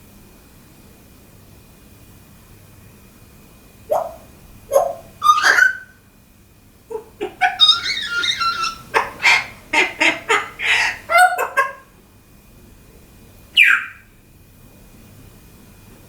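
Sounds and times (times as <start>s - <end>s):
parrot calling: 3.9s - 6.0s, 6.9s - 11.9s, 13.6s - 14.0s.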